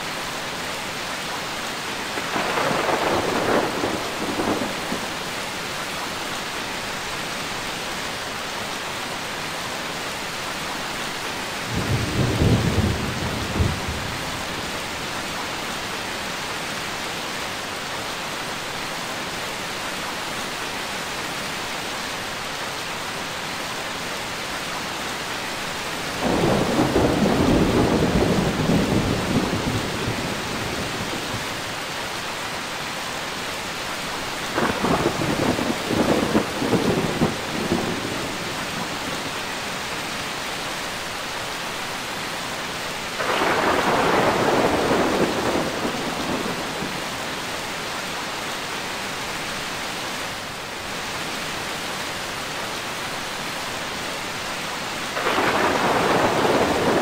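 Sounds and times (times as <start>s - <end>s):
heavy rain: 0.0s - 57.0s
rolling thunder: 2.2s - 5.2s, 11.7s - 14.5s, 26.2s - 31.2s, 34.5s - 39.0s, 43.2s - 47.0s, 55.2s - 57.0s.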